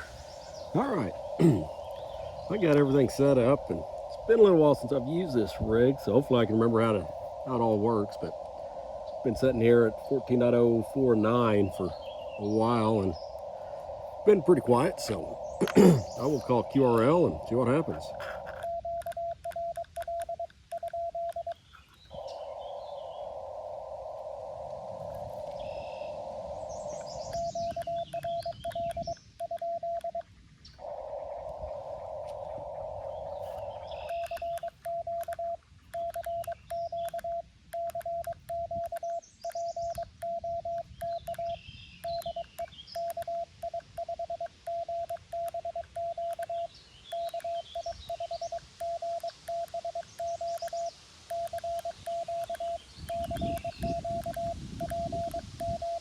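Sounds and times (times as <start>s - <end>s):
birds chirping faintly: 0.0s - 56.0s
receiver hiss: 0.0s - 56.0s
morse code tone: 18.5s - 21.6s, 27.4s - 30.2s, 34.1s - 56.0s.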